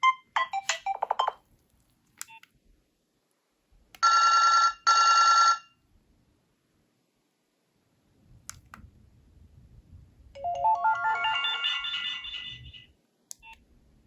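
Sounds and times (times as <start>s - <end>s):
mobile phone ringtone: 10.4s - 12.9s.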